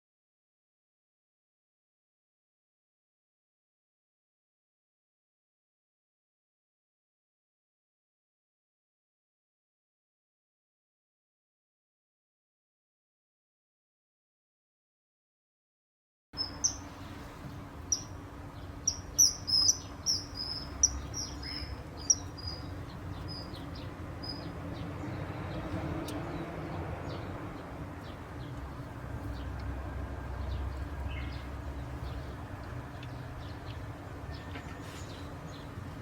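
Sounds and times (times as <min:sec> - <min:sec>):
kingfisher shrill calls: 0:16.4 - 0:16.9, 0:18.8 - 0:22.7
low hum and rumble: 0:16.4 - 0:36.0.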